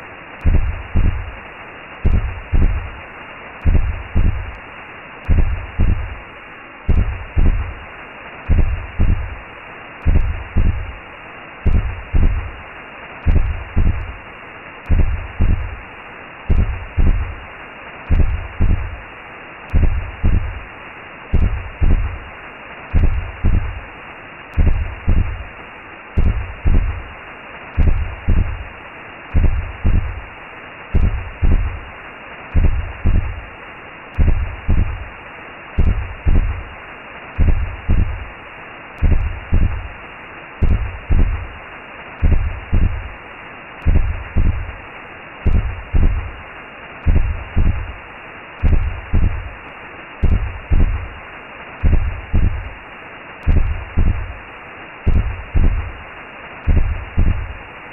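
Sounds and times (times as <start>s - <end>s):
slow heartbeat thumps: 0.4s - 1.4s, 2.0s - 3.0s, 3.6s - 4.6s, 5.2s - 6.2s, 6.9s - 7.8s, 8.5s - 9.4s, 10.0s - 11.0s, 11.6s - 12.6s, 13.2s - 14.2s, 14.9s - 15.8s, 16.5s - 17.4s, 18.1s - 19.0s, 19.7s - 20.7s, 21.3s - 22.3s, 22.9s - 23.9s, 24.5s - 25.5s, 26.2s - 27.1s, 27.8s - 28.7s, 29.3s - 30.3s, 31.0s - 31.9s, 32.5s - 33.5s, 34.2s - 35.1s, 35.8s - 36.8s, 37.4s - 38.3s, 39.0s - 40.0s, 40.6s - 41.6s, 42.2s - 43.2s, 43.8s - 44.8s, 45.4s - 46.4s, 47.0s - 48.0s, 48.6s - 49.6s, 50.2s - 51.2s, 51.8s - 52.8s, 53.4s - 54.4s, 55.1s - 56.0s, 56.6s - 57.6s.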